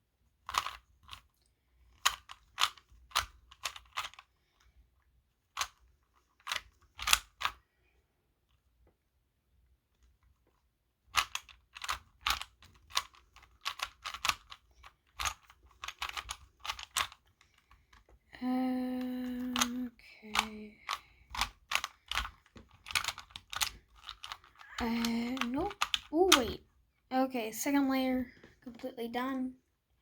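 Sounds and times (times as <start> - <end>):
plastic puzzle cube clicking: 0.4 - 4.7, 5.4 - 7.6, 11.1 - 18.1, 19.3 - 26.6
person humming: 18.4 - 20.8, 24.7 - 26.6.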